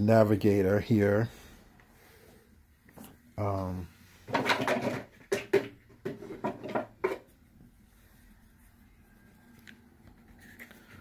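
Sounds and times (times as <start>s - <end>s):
plastic parts knocking: 4.3s - 7.3s.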